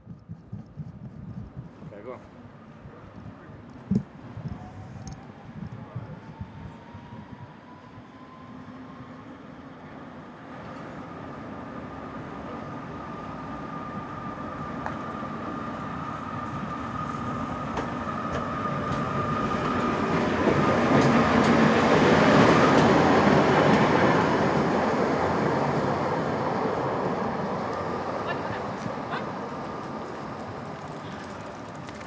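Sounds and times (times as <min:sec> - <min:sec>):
tram rumbling on rails: 0:00.0 - 0:32.0
wheels clicking over track: 0:16.0 - 0:32.0.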